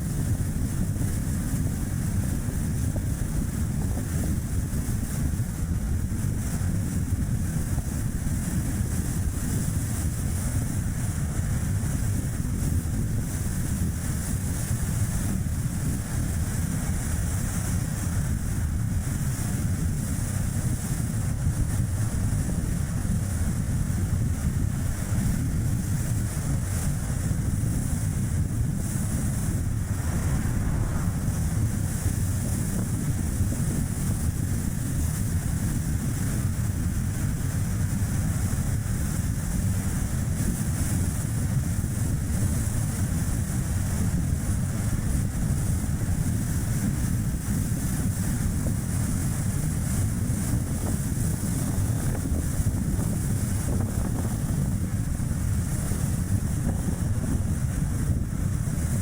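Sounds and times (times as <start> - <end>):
wind buffeting microphone: 0.0 - 59.0
tyre and road noise: 28.4 - 34.5.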